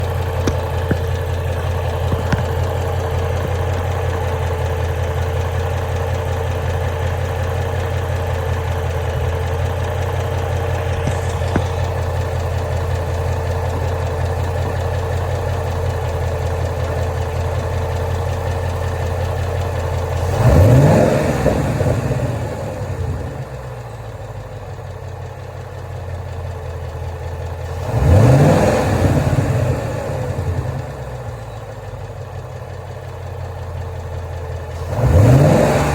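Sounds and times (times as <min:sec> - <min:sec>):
car engine idling with ticking: 0:00.0 - 0:35.9
engine revving: 0:10.5 - 0:13.9, 0:20.0 - 0:23.7, 0:27.6 - 0:31.4, 0:34.7 - 0:35.9.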